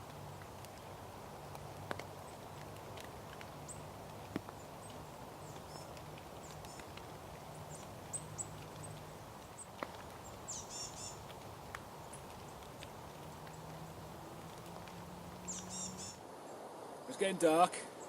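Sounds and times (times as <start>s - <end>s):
high bird calls: 3.5s - 11.3s, 11.9s - 16.2s
bird twittering: 4.6s - 11.3s, 15.0s - 16.2s.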